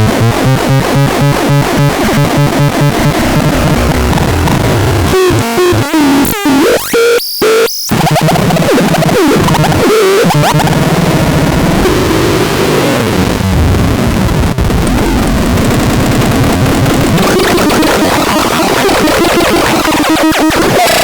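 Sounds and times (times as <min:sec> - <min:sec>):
harsh electronic noise music: 0:00.0 - 0:21.0.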